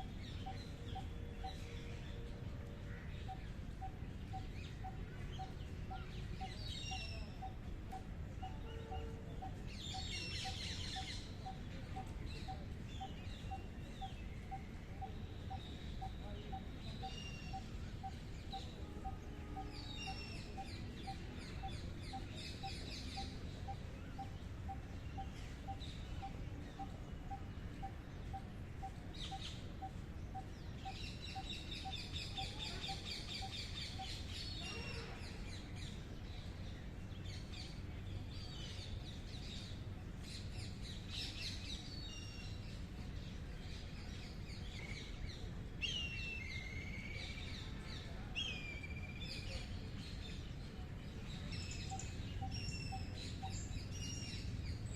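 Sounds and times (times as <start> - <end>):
songbirds trilling: 2.8 - 39.6, 51.3 - 54.9.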